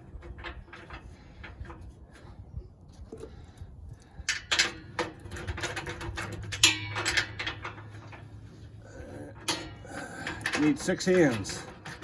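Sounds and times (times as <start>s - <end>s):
metal parts clinking and knocking: 4.2s - 8.4s, 9.2s - 12.0s.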